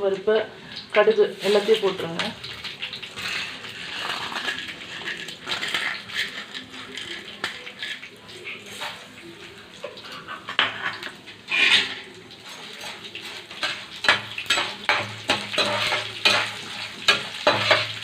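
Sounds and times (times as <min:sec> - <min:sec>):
spices sizzling in hot oil: 0:00.0 - 0:18.0
utensil clinking against pan: 0:10.5 - 0:18.0.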